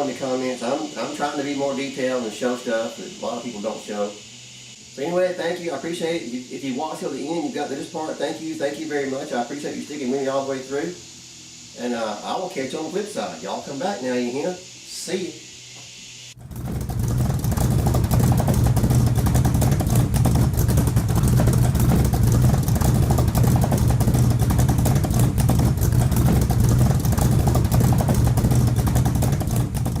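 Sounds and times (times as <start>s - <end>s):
vehicle engine running: 16.4s - 30.0s.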